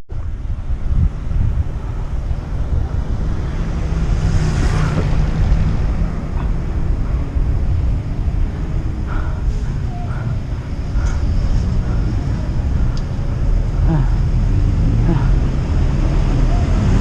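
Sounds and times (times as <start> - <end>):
wind buffeting microphone: 0.1 - 17.0.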